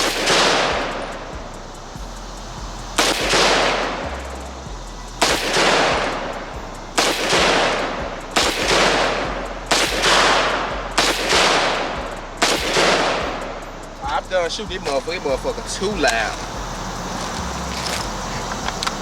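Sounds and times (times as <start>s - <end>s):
pistol gunshots echoing: 0.0s - 1.0s, 3.0s - 4.0s, 5.2s - 6.3s, 7.0s - 13.6s.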